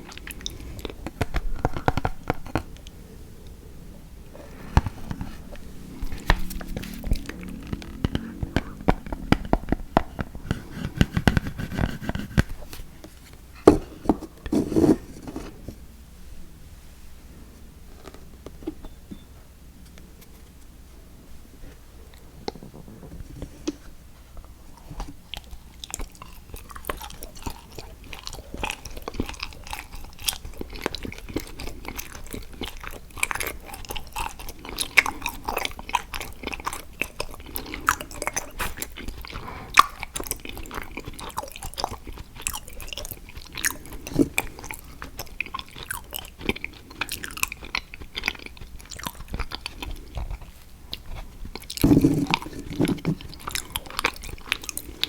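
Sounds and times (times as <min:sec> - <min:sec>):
chocolate crunching: 0:00.0 - 0:11.0, 0:25.0 - 0:55.0.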